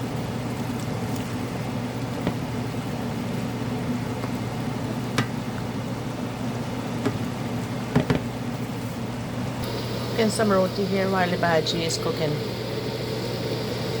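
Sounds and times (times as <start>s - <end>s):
steady low hum: 9.5s - 14.0s
pot simmering sizzle: 9.6s - 14.0s.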